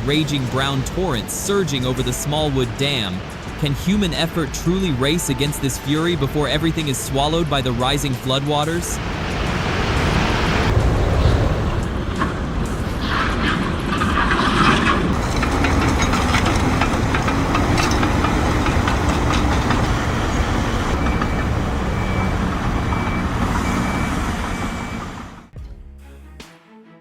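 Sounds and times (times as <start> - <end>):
floodwater rushing over dam: 0.0 - 21.0
bulldozer diesel engine running: 0.0 - 25.6
reversing alarm beeps: 20.9 - 25.4.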